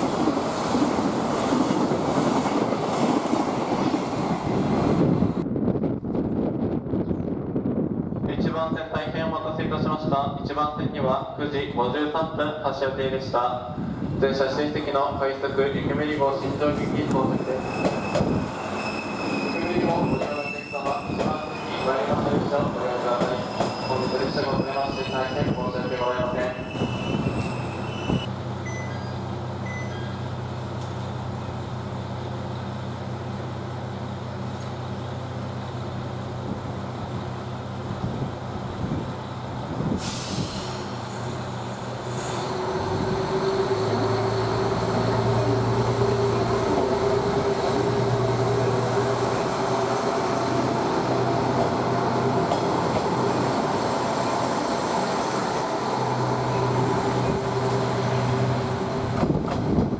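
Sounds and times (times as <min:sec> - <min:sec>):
diesel railcar engine: 0:00.0 - 0:08.3, 0:11.2 - 0:59.9
air hiss: 0:39.9 - 0:41.4.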